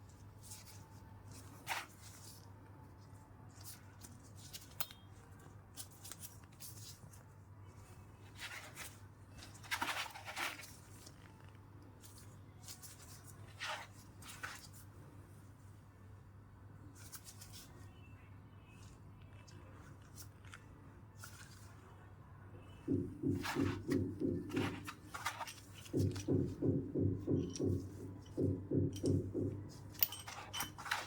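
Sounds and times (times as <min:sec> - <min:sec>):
hand tools clicking and scraping: 0:27.3 - 0:31.0.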